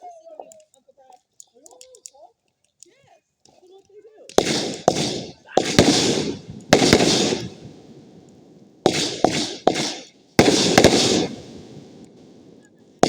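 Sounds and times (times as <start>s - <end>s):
fireworks bangs and crackle: 4.3s - 13.0s.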